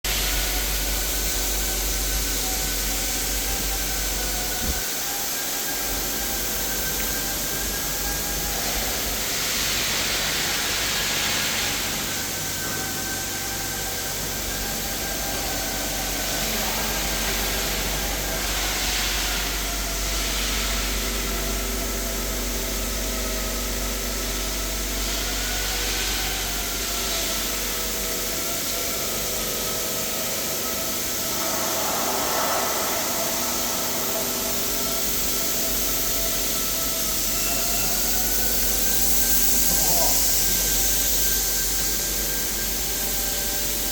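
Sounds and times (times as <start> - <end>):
machine hum with whining tones: 0.0 - 43.9
loud hissing: 30.3 - 41.2.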